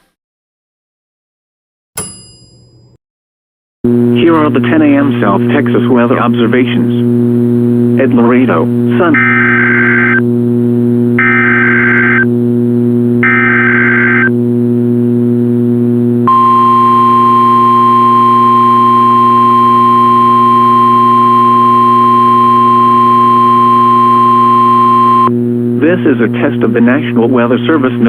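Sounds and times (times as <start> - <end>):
steady low hum: 3.9 - 28.0
steady alarm tone: 8.9 - 10.3, 11.2 - 12.3, 13.2 - 14.3, 16.2 - 25.3.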